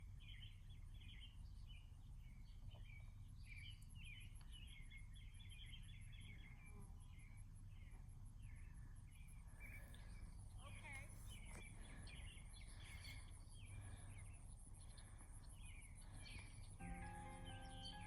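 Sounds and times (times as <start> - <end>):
songbird chirping and warbling: 0.0 - 18.0
insect high chirp: 3.7 - 18.0.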